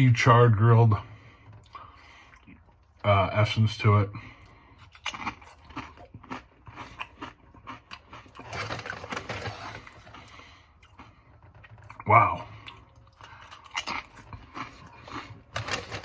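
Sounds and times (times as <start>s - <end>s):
crunching tortilla chips: 4.8s - 16.0s.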